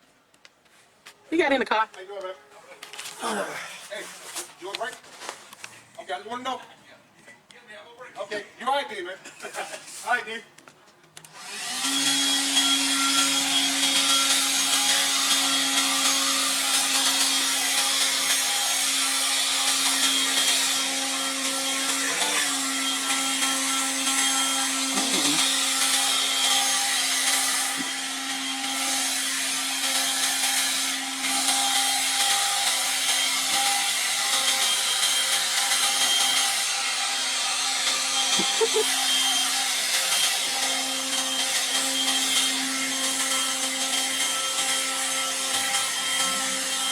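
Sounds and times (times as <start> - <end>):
leaf blower running: 11.4 - 18.4, 19.6 - 46.9.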